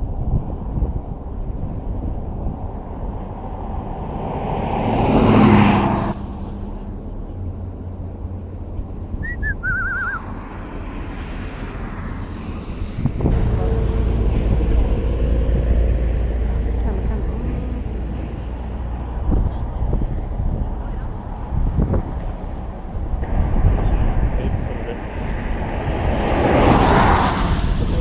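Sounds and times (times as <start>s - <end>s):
car road noise rumble: 0.0s - 28.0s
rushing swell: 9.1s - 19.2s.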